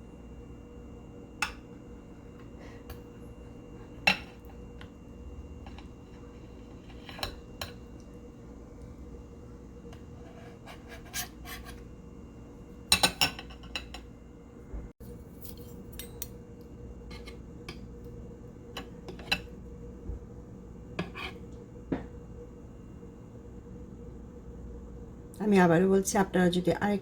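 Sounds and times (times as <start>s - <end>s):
cutlery clinking on a plate: 12.9s - 14.1s.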